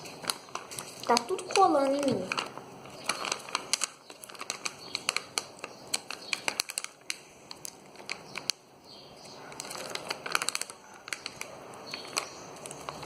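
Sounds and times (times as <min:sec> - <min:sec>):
slime pouch clicks and crackles: 0:00.2 - 0:08.6, 0:09.6 - 0:13.0.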